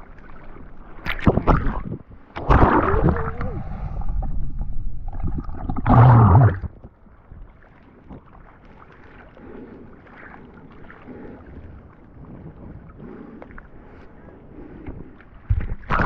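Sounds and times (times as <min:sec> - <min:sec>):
muffled water sloshing: 0:00.0 - 0:16.0.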